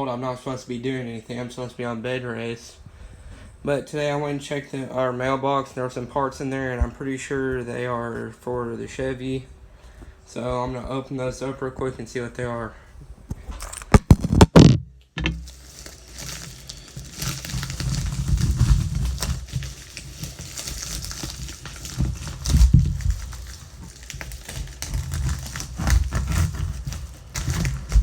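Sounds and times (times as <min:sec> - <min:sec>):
bumps of handling: 0:13.3 - 0:28.0
plastic wrapping crinkling: 0:13.5 - 0:28.0
packaging being torn open: 0:13.6 - 0:14.8, 0:15.4 - 0:28.0.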